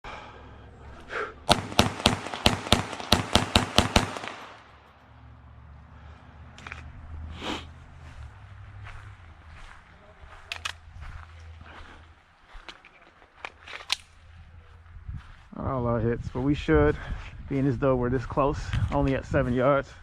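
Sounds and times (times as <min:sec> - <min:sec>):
pistol shots: 0:01.5 - 0:04.8.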